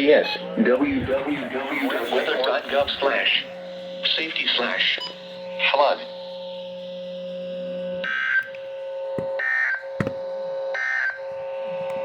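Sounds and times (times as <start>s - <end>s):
steady hum: 0.4s - 9.4s.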